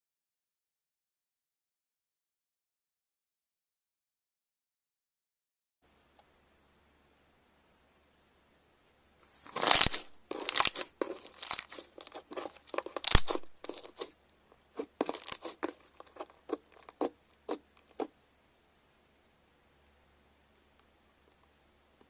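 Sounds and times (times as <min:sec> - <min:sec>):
slime crackling and tearing: 0:09.5 - 0:14.2, 0:14.8 - 0:18.1.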